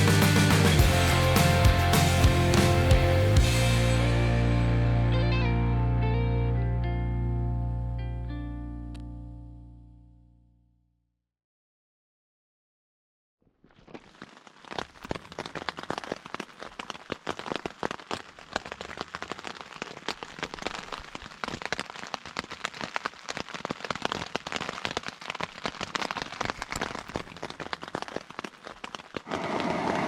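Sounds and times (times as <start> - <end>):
rain falling: 0.0 - 4.6, 14.0 - 30.0.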